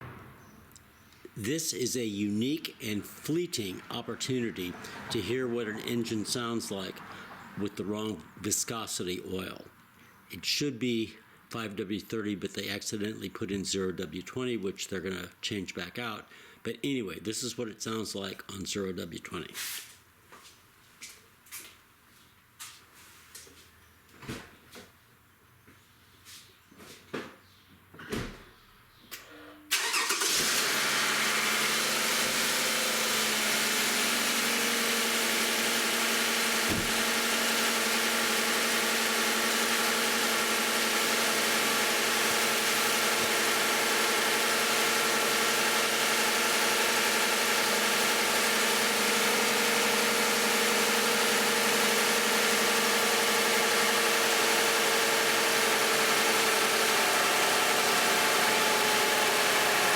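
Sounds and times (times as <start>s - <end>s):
car engine idling: 2.4s - 8.0s, 29.7s - 59.9s
car engine cold starting: 2.8s - 7.8s, 29.7s - 59.9s.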